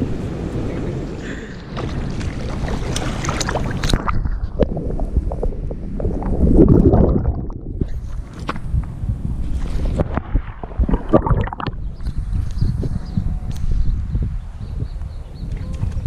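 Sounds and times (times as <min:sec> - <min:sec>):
water splashing and sloshing: 0:00.0 - 0:08.6, 0:09.4 - 0:12.1
wind buffeting microphone: 0:00.0 - 0:16.0.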